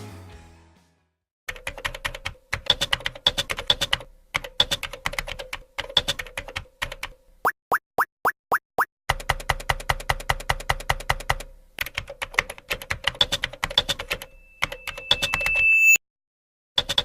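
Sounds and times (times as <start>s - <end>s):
keyboard typing: 1.5s - 7.2s, 9.1s - 15.6s, 16.8s - 17.0s.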